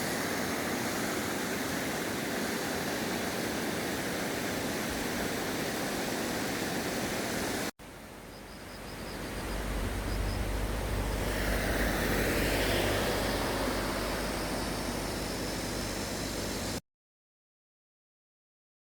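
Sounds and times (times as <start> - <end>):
stream water rushing: 0.0 - 16.8
low rumble: 9.0 - 16.8.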